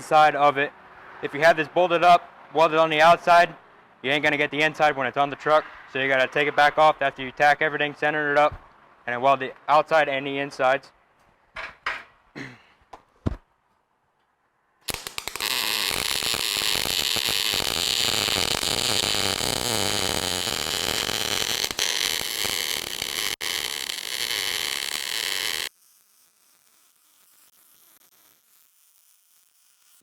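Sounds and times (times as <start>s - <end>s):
welding arc crackling: 14.9s - 30.0s.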